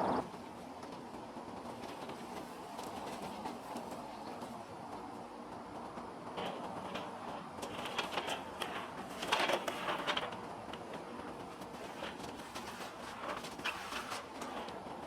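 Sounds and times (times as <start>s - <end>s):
metal tank rolling with clanks: 6.3s - 15.0s.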